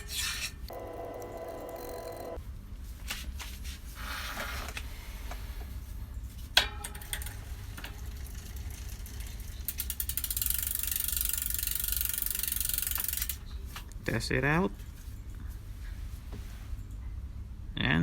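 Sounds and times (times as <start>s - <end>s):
bicycle parts clicking and rattling: 0.0s - 2.4s, 6.4s - 14.0s
bicycle hub ratcheting tick: 1.0s - 2.4s, 6.6s - 13.4s.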